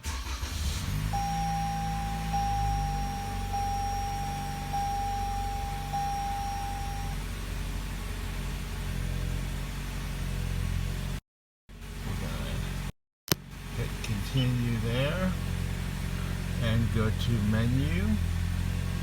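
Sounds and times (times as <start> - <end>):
car engine idling: 0.0 - 11.1, 13.4 - 19.0
dashboard warning chime: 0.9 - 7.2.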